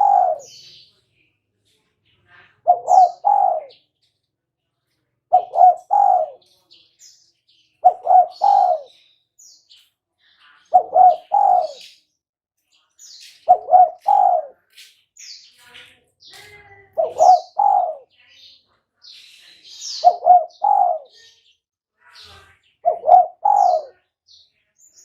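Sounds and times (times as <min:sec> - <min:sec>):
dove cooing: 0:00.0 - 0:00.6, 0:02.6 - 0:03.8, 0:05.3 - 0:06.4, 0:07.8 - 0:09.0, 0:10.7 - 0:11.9, 0:13.5 - 0:14.6, 0:17.0 - 0:18.1, 0:20.0 - 0:21.3, 0:22.8 - 0:24.0
small birds chirping: 0:00.0 - 0:25.0.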